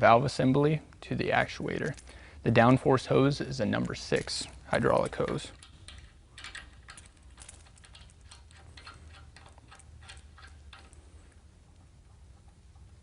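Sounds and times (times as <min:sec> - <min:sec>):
low steady hum: 0:00.0 - 0:13.0
hose fitting clicking: 0:03.8 - 0:11.0.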